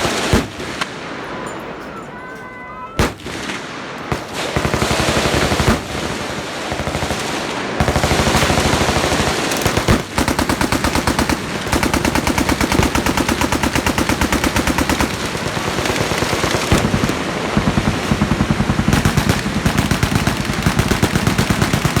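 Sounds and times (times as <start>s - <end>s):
machine guns firing: 0.0s - 1.5s, 3.0s - 22.0s.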